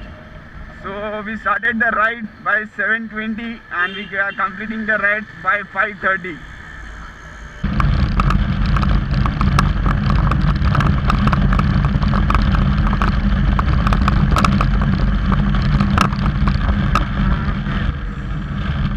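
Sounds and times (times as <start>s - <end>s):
motorcycle engine: 6.4s - 18.9s
wind buffeting clicks: 7.6s - 18.9s
wind rumble on microphone: 7.6s - 18.9s.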